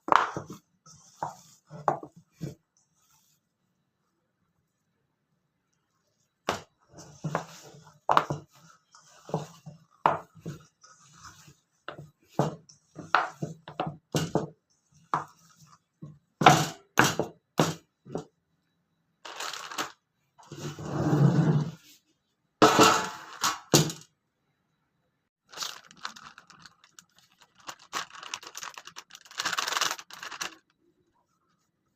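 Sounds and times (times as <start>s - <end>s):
scraping or rustling: 25.5s - 30.7s.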